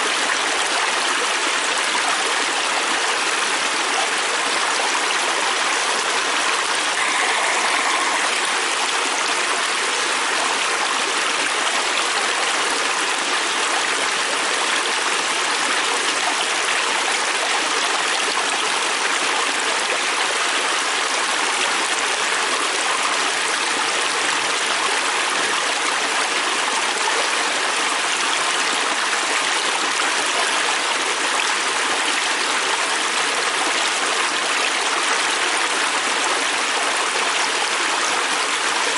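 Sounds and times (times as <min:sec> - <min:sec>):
river rushing: 0:06.8 - 0:10.1.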